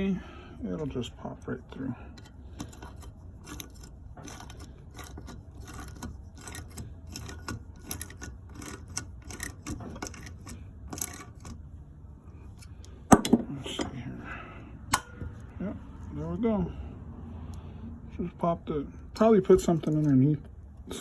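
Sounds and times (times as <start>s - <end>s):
ratchet wrench clicking: 2.2s - 11.6s.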